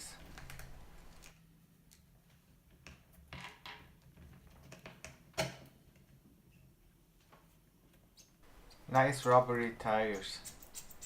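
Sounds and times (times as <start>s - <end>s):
small clicks and scrapes: 10.1s - 11.0s.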